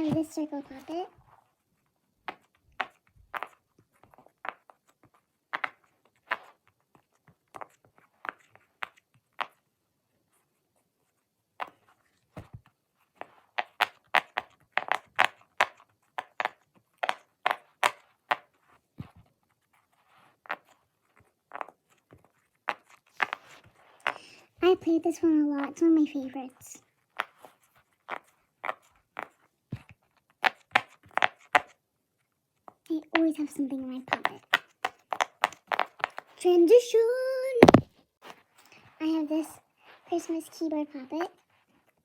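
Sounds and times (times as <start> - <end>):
fidget toy popping: 13.6 - 18.5, 33.0 - 37.9.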